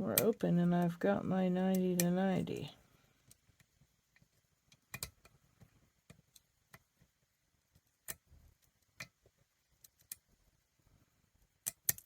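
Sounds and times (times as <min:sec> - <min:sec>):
lock pick metallic clicks: 0:11.6 - 0:12.0.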